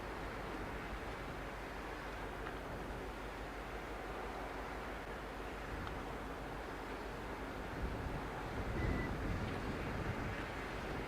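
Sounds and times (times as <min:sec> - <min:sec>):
outdoor ambience hiss: 0:00.0 - 0:11.0
wind buffeting microphone: 0:05.5 - 0:11.0.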